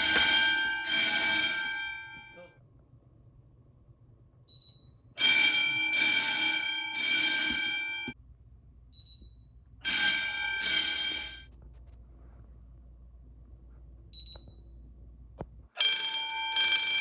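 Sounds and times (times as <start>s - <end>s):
fire alarm bell ringing: 0.0s - 2.5s, 4.6s - 8.2s, 9.8s - 11.5s, 15.8s - 17.0s.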